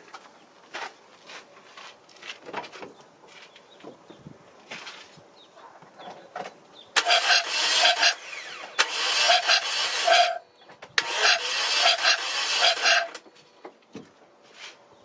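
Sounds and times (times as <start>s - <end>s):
starter motor cranking engine: 7.0s - 10.4s, 11.0s - 13.2s.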